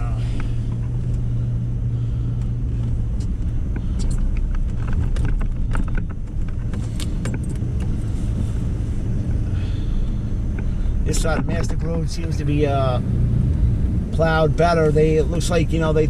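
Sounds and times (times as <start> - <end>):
engine and tyre rumble: 0.0 - 16.0
clicks and rattles: 3.2 - 8.0.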